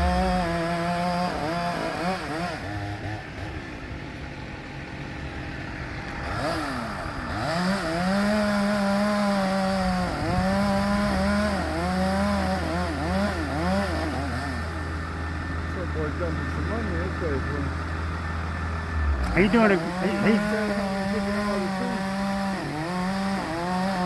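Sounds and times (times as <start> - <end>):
chainsaw revving: 0.0 - 3.7, 6.2 - 15.2, 18.8 - 24.0.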